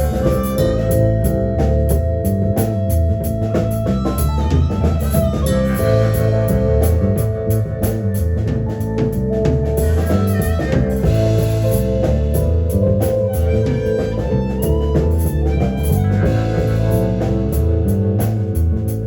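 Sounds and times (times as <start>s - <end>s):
live rock band playing: 0.0s - 19.0s.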